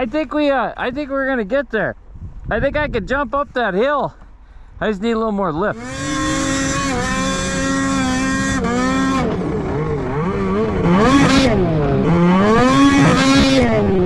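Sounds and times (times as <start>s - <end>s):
snowmobile engine revving: 5.7s - 14.0s.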